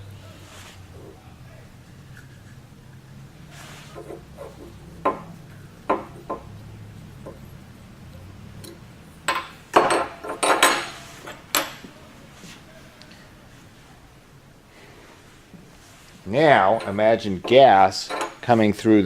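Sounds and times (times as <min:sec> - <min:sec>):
metal parts clinking: 0:08.6 - 0:11.9, 0:16.4 - 0:18.6.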